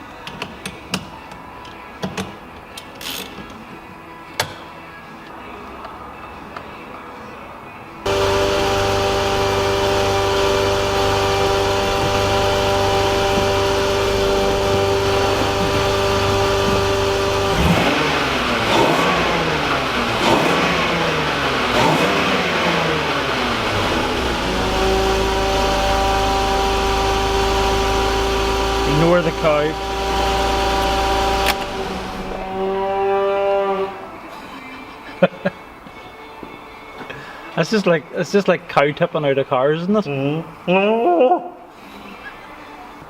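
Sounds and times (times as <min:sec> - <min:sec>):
car engine revving: 0:08.1 - 0:34.3.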